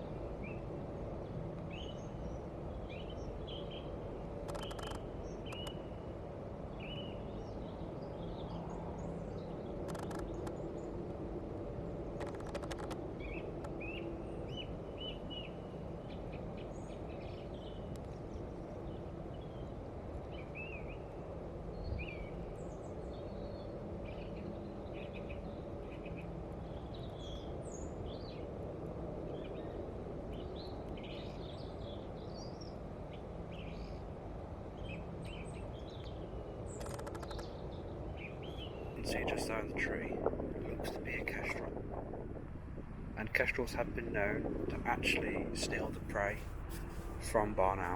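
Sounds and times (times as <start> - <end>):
low outdoor background noise: 0.0 - 47.9
small birds chirping: 0.4 - 6.1, 34.8 - 41.9.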